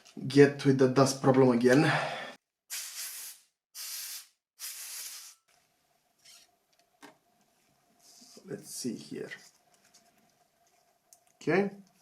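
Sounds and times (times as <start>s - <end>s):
air duster hissing: 2.7s - 5.4s.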